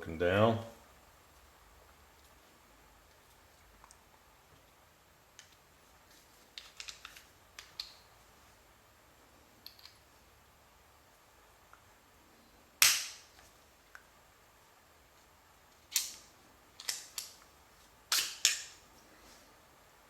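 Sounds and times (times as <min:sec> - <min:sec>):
small metal clicks of pistol: 0:15.9 - 0:17.4.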